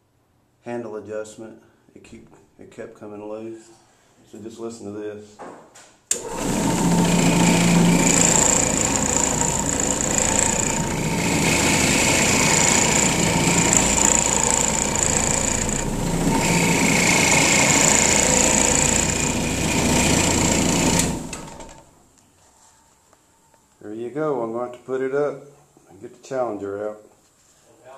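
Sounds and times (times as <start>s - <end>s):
carpet cleaning machine droning: 6.1s - 21.9s.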